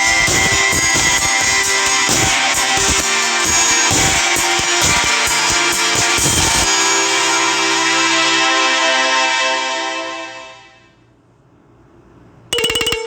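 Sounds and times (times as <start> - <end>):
drum beat: 0.0 - 8.1
ringtone music: 0.0 - 10.8.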